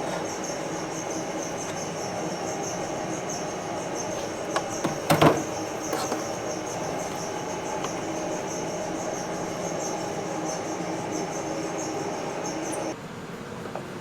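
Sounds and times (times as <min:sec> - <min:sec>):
machine running with high whine: 0:00.0 - 0:13.0
sharp metal clanks and knocks: 0:04.2 - 0:08.1.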